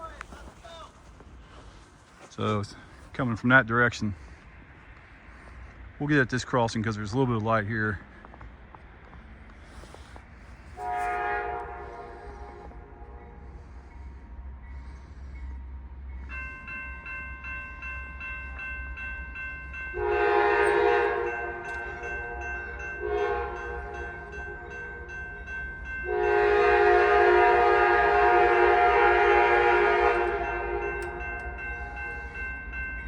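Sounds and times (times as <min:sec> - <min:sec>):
crossing warning bell ringing: 0:10.7 - 0:33.0
locomotive air horn blasts: 0:10.8 - 0:14.0, 0:19.9 - 0:25.1, 0:26.0 - 0:32.2.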